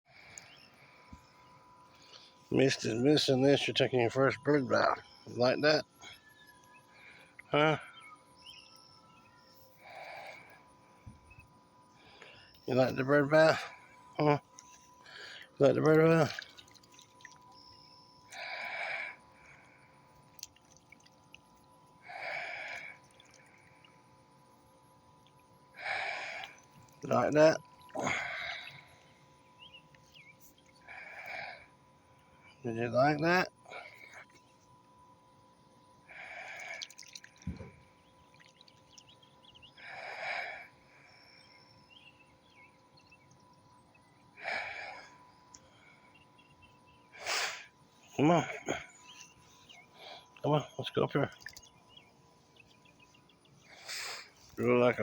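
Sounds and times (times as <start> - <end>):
bird splashing in water: 16.2 - 17.5, 20.4 - 21.4, 36.6 - 37.5, 51.3 - 51.7.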